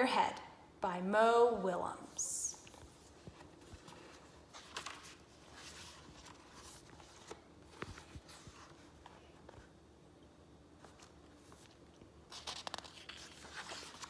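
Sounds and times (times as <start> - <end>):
book pages rustling and turning: 2.5 - 9.8, 10.8 - 14.0.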